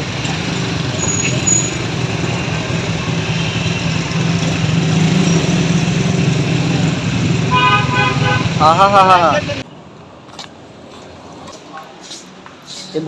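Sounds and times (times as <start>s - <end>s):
horn tone: 7.5s - 8.8s.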